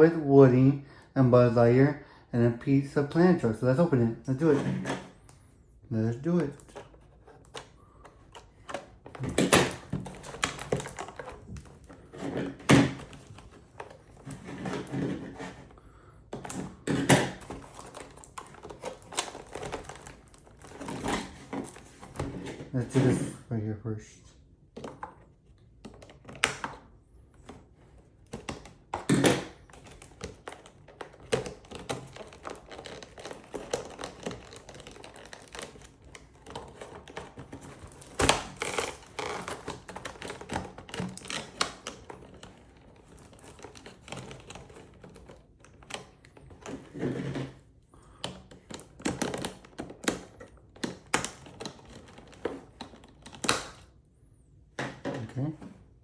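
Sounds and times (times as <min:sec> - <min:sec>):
plastic and cardboard crinkling: 0:02.6 - 0:23.3, 0:24.7 - 0:54.0
clicks knocks and thumps: 0:06.3 - 0:15.7.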